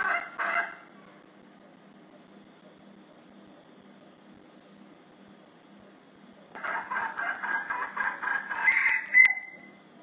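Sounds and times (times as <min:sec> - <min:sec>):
junglefowl squawking calls: 0:00.0 - 0:00.9, 0:06.6 - 0:09.7.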